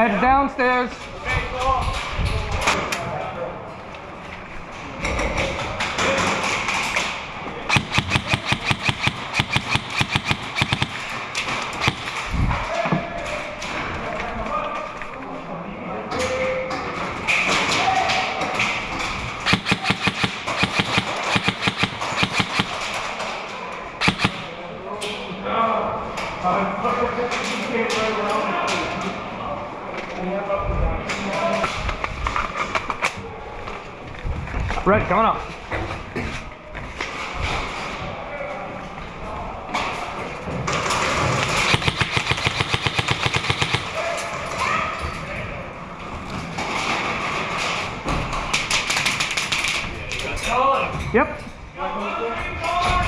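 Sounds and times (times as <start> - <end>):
airsoft guns firing rapidly: 7.7 - 12.3, 19.4 - 23.3, 24.0 - 24.6, 41.0 - 44.2.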